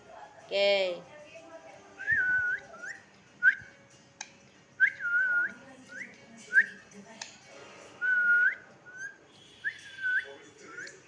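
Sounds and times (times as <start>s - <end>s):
parakeet whistling: 2.0s - 3.6s, 8.0s - 11.0s.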